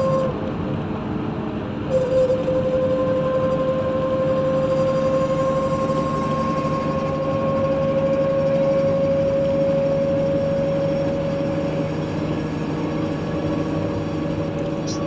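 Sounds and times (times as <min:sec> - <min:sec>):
vehicle engine rumble: 0:00.0 - 0:15.0
high whine: 0:01.8 - 0:15.0.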